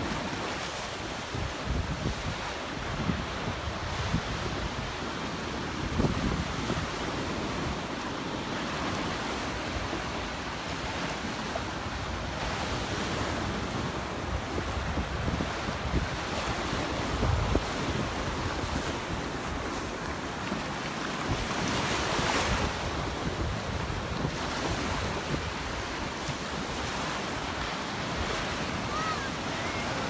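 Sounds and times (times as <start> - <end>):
surf washing onto beach: 0.0 - 30.0
wind buffeting microphone: 0.8 - 7.9, 8.5 - 20.3, 21.2 - 30.0.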